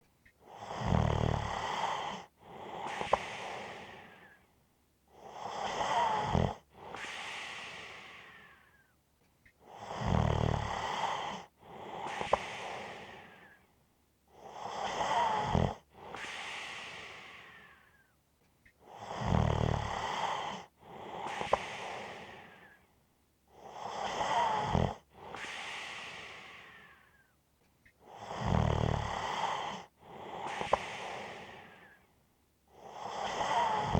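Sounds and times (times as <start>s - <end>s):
person snoring: 0.5s - 4.2s, 14.8s - 16.9s, 23.7s - 27.0s, 28.1s - 32.0s, 32.8s - 33.9s.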